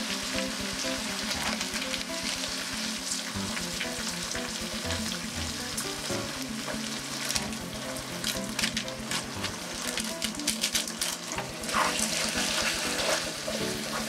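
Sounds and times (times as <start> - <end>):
background music: 0.0 - 14.0
food sizzling in a hot pan: 0.0 - 14.0.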